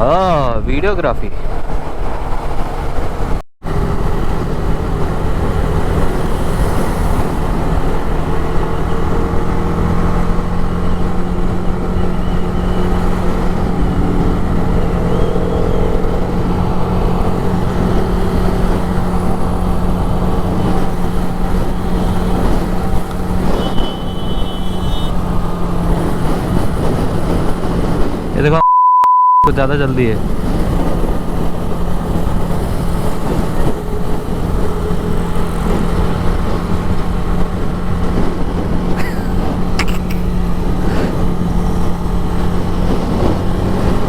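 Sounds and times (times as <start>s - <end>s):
wind and road noise: 0.0s - 28.6s, 29.5s - 44.0s
motorcycle engine hum: 1.8s - 28.4s, 29.9s - 44.0s
short high beep: 28.5s - 29.5s.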